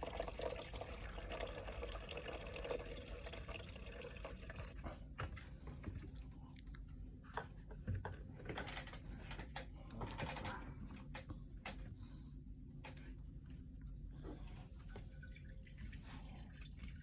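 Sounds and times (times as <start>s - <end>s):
liquid pouring and splashing: 0.0s - 4.9s, 14.5s - 17.0s.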